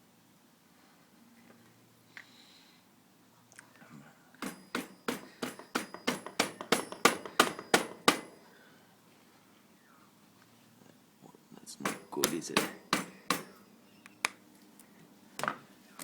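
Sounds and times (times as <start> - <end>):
mallet blows on metal: 4.4 - 8.5, 11.8 - 13.6.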